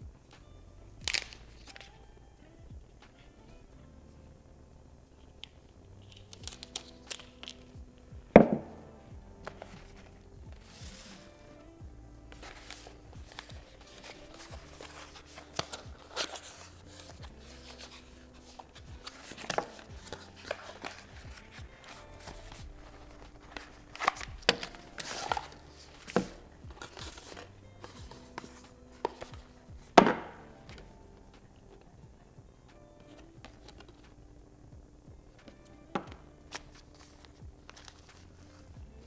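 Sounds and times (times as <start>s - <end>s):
soft background music: 0.0s - 39.0s
knocks on a hard surface: 8.4s - 8.8s
packaging rustling: 12.3s - 30.2s, 36.5s - 38.6s.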